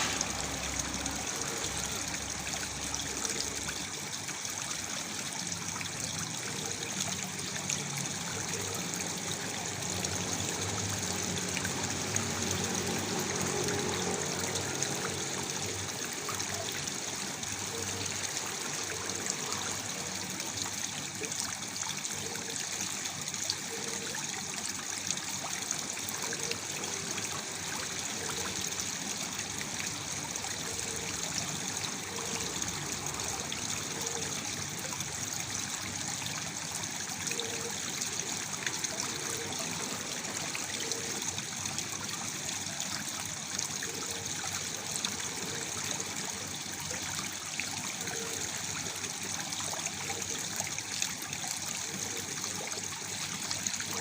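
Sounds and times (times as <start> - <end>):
waterfall splashing: 0.0 - 4.0.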